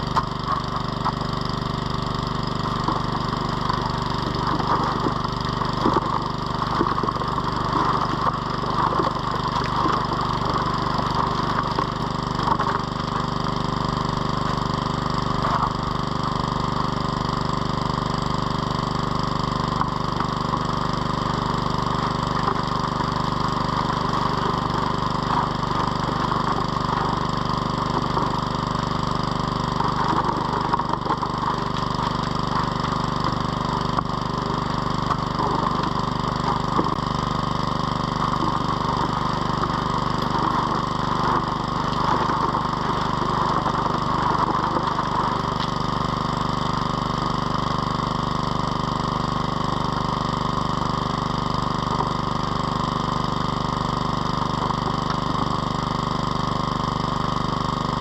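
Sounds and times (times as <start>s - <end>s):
gravel crackling and rattling: 0.0s - 16.5s, 19.6s - 46.7s
petrol pump engine running: 0.0s - 58.0s
water rushing over sluice: 0.0s - 58.0s.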